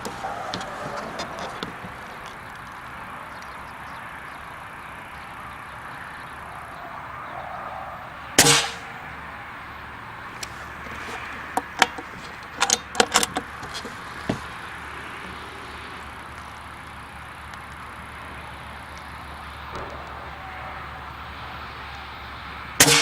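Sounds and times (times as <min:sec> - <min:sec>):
air rifle shot: 0:08.4 - 0:09.2, 0:22.8 - 0:23.0.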